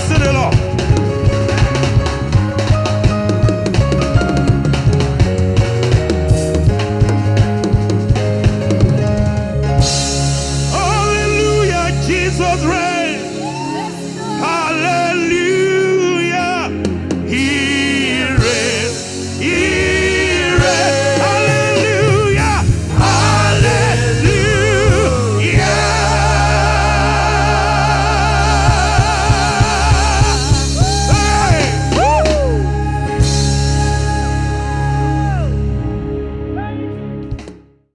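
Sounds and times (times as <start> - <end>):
bass and keyboard: 0.0 - 37.9
gospel singers: 10.6 - 36.1
drum hits: 18.4 - 34.0.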